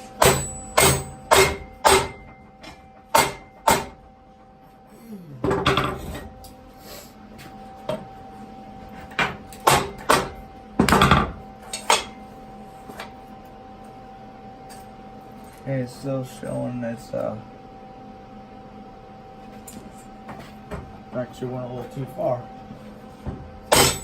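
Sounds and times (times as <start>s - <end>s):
hammer clanking on steel frame: 23.7s - 24.0s.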